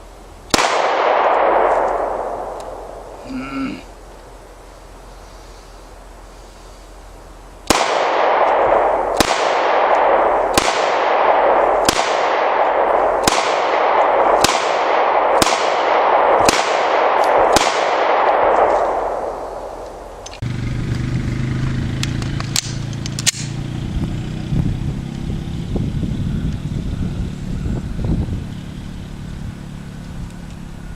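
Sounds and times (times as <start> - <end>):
pistol shots with echo: 0.5 - 3.1, 7.6 - 20.2.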